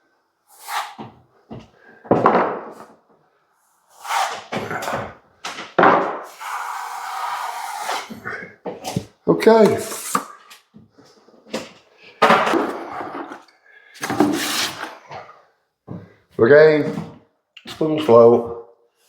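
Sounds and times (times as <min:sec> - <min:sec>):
trowel scraping wet plaster: 0:04.0 - 0:05.1, 0:09.6 - 0:10.3, 0:14.0 - 0:15.0.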